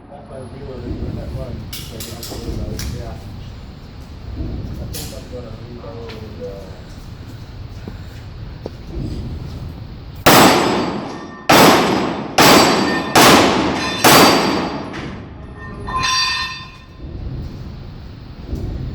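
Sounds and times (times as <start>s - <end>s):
pistol shots echoing: 10.3s - 15.0s
short metallic ring: 13.8s - 17.0s.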